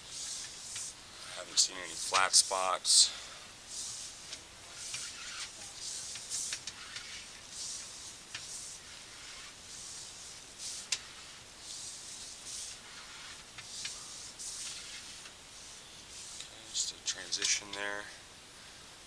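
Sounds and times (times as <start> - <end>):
cable rubbing hiss: 0.0 - 18.0.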